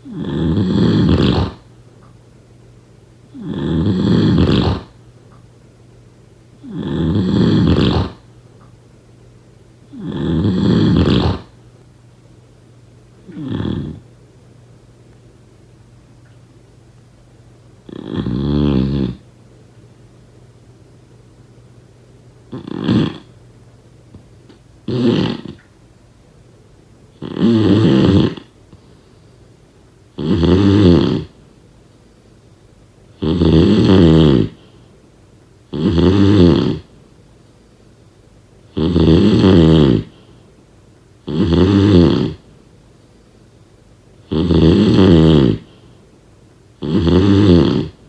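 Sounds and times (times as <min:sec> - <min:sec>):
rattly snoring: 0:00.0 - 0:01.7, 0:03.3 - 0:05.0, 0:06.6 - 0:08.3, 0:09.9 - 0:11.6, 0:13.3 - 0:14.0, 0:17.8 - 0:19.2, 0:22.5 - 0:23.3, 0:24.8 - 0:25.6, 0:27.2 - 0:28.6, 0:30.2 - 0:31.4, 0:33.2 - 0:34.6, 0:35.7 - 0:36.9, 0:38.7 - 0:40.2, 0:41.2 - 0:42.4, 0:44.2 - 0:45.7, 0:46.8 - 0:48.0.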